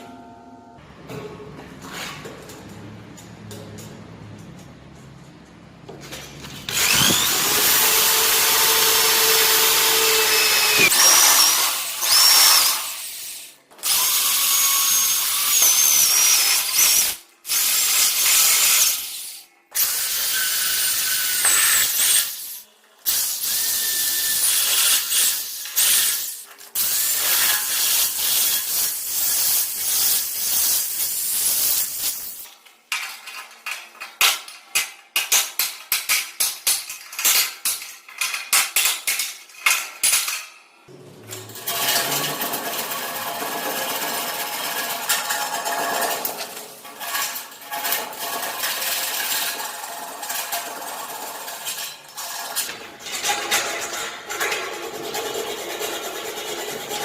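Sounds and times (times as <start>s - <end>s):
electric drill boring steel: 6.7s - 22.6s.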